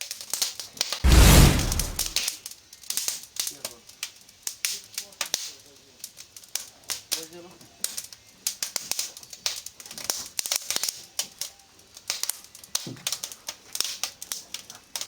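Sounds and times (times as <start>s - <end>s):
wood fire crackling: 1.0s - 2.2s.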